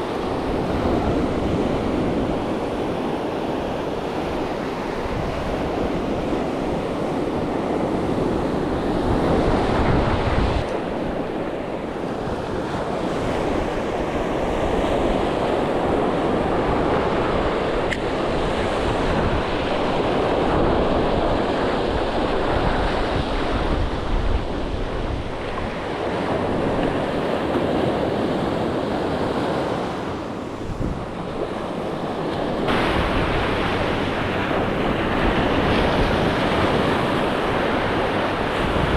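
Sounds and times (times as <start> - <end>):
sea surf washing ashore: 0.0 - 38.9
wind buffeting microphone: 0.0 - 38.9.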